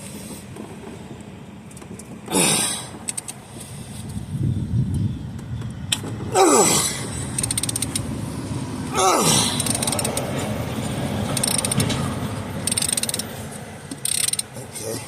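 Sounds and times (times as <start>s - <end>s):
socket ratchet clicking: 3.0s - 3.4s, 7.2s - 8.1s, 9.5s - 10.3s, 11.3s - 12.0s, 12.6s - 14.6s.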